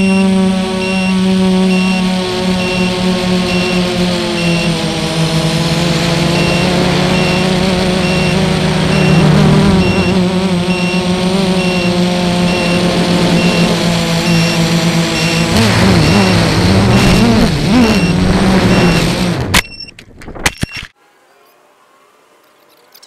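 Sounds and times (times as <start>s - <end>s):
short high beep: 0.0s - 4.8s, 6.3s - 17.2s
drone motors whining: 0.0s - 20.0s.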